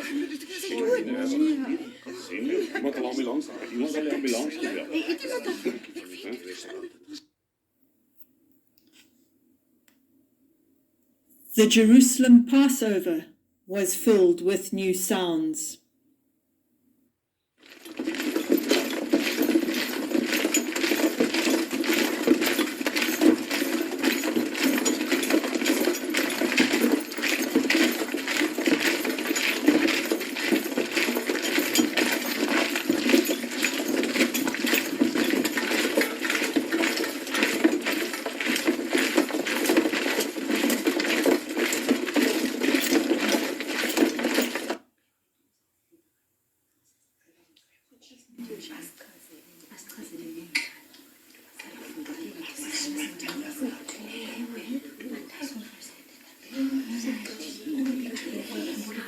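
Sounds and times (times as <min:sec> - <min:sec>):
small hard objects clinking and rattling: 0:17.6 - 0:44.8.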